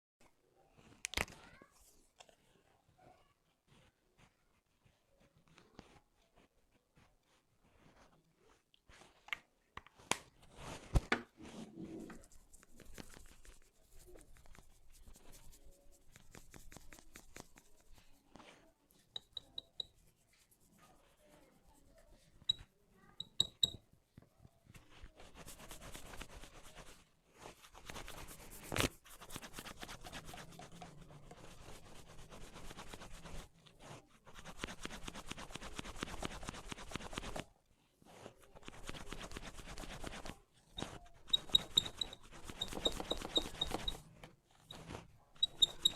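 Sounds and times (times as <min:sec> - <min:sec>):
hands rustling and crackling hair: 0:12.1 - 0:18.6.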